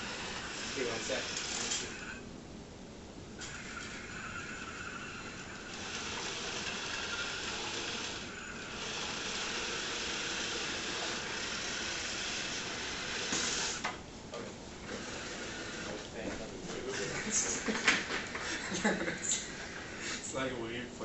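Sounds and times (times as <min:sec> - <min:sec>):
robot vacuum hissing: 0:00.0 - 0:02.2, 0:03.5 - 0:13.9, 0:14.8 - 0:16.1, 0:18.4 - 0:20.5.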